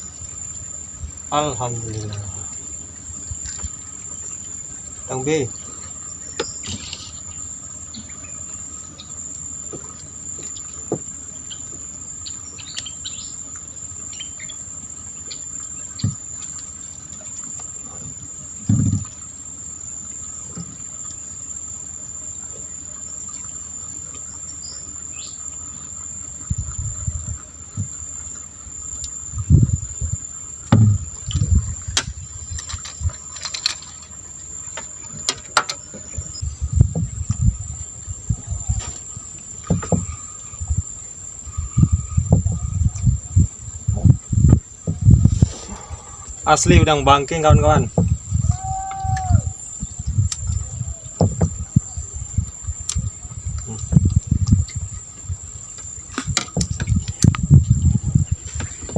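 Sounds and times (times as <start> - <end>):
insects chirring: 0.0 - 58.9
low thumps and rumbles: 29.2 - 33.2, 36.0 - 45.5, 47.6 - 58.9.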